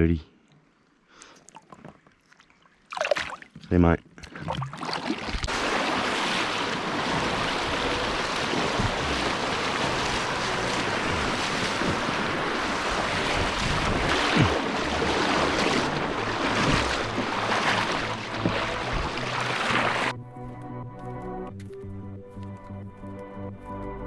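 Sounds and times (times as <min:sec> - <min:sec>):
creek water rushing: 0:05.4 - 0:21.2.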